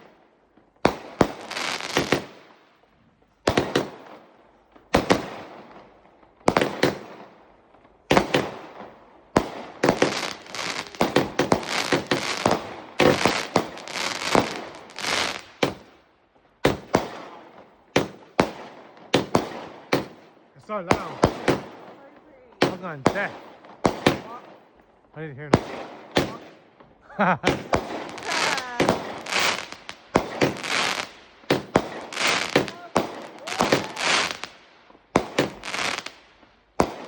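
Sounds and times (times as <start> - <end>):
firework shells banging: 9.4 - 15.9, 25.5 - 36.2.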